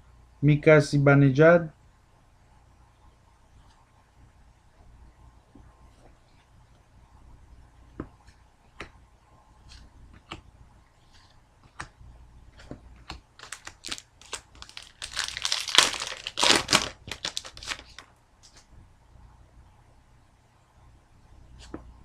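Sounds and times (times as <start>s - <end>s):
cards clicking and tapping: 11.6s - 12.0s, 12.6s - 18.6s
foil wrapper crinkling and tearing: 13.4s - 18.1s.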